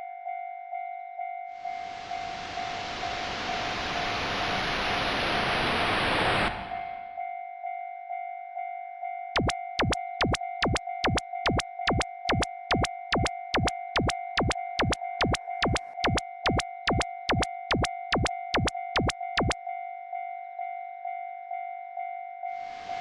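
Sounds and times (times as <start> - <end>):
sharp clicks: 9.4 - 19.6.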